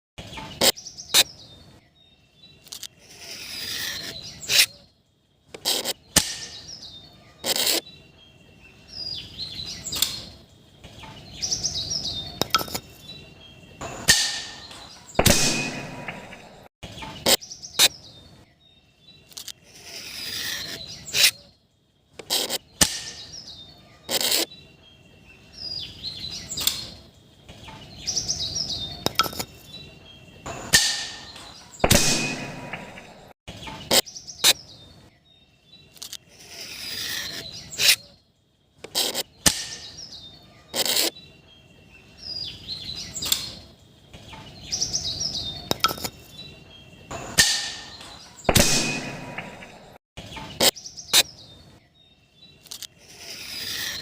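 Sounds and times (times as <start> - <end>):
birds chirping: 0.2 - 54.0
gunshots: 15.2 - 16.6, 31.8 - 33.3, 48.5 - 49.9.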